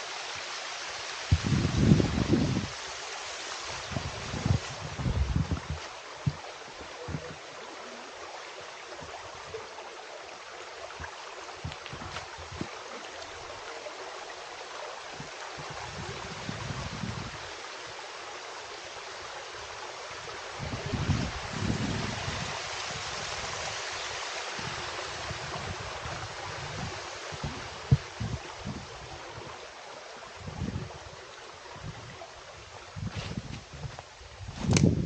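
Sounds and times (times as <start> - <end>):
rushing water hiss: 0.0 - 35.0
wind buffeting microphone: 1.3 - 2.8, 3.8 - 7.5, 10.9 - 13.6, 15.0 - 17.5, 20.2 - 23.9, 24.6 - 29.6, 30.3 - 35.0.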